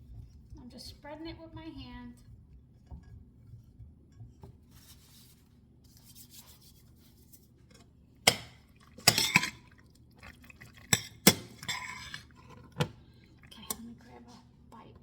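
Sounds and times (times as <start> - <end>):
dishes and utensils clinking: 8.3 - 9.8, 10.7 - 12.8.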